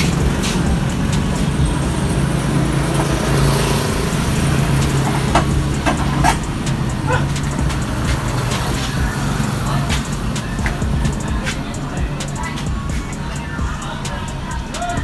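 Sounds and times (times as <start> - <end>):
engine humming: 0.0 - 15.0.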